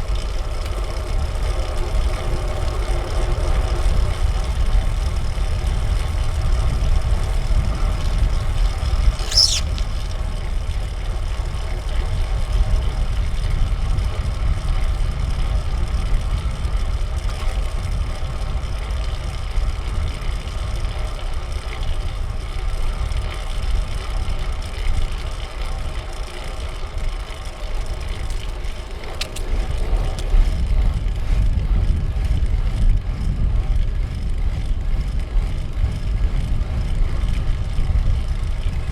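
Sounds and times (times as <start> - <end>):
road and drivetrain noise: 0.0 - 38.9
brief high chirp: 9.2 - 9.9
wind buffeting microphone: 28.7 - 38.9.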